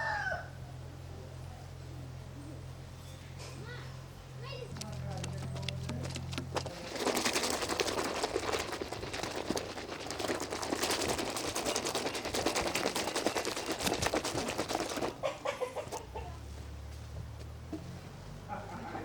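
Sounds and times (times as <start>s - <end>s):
soapy foam squishing: 5.3s - 15.2s.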